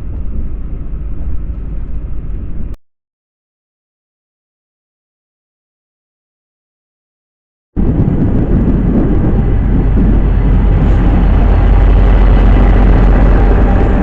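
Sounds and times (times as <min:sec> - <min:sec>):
passenger train rumbling past: 0:00.0 - 0:02.8, 0:07.8 - 0:14.0.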